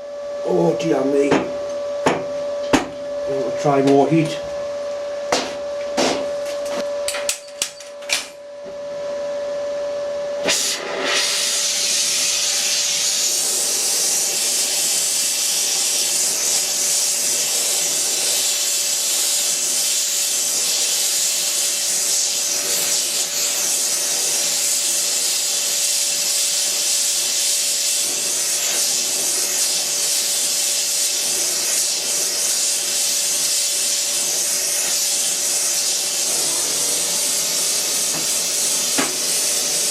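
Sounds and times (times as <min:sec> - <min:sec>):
gas torch igniter clicks: 0:06.6 - 0:08.3, 0:38.1 - 0:39.3
gas torch hissing: 0:10.4 - 0:39.9.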